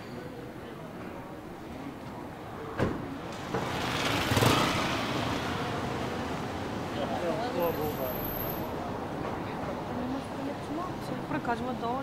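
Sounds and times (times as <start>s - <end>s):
vehicle passing close by: 3.6s - 8.7s.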